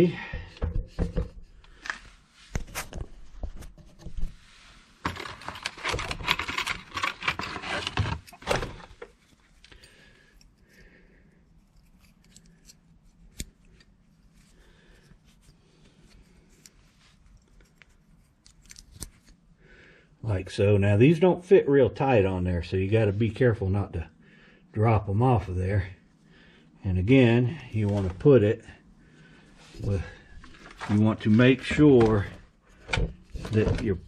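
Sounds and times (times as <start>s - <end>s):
metal clips clinking and scraping: 5.1s - 10.8s, 11.6s - 14.4s, 16.1s - 19.4s.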